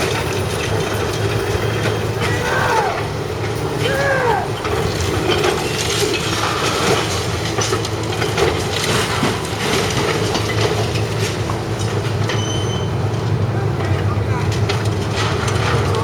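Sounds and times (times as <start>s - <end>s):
light-rail train running: 0.0s - 16.0s
rail clatter: 0.0s - 16.0s.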